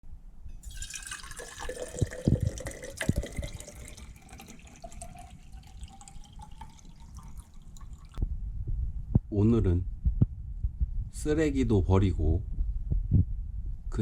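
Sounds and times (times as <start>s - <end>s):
water running into container: 0.6s - 8.2s.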